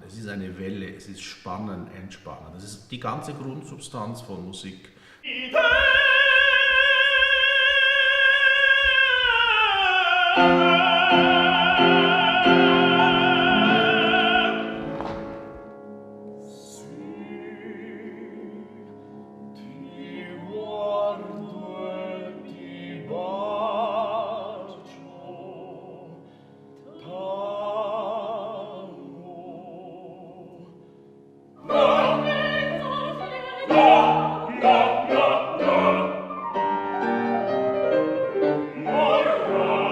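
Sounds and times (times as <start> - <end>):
operatic singing: 5.2 - 15.6, 16.5 - 30.8, 31.6 - 39.9
instrumental accompaniment: 10.3 - 23.6.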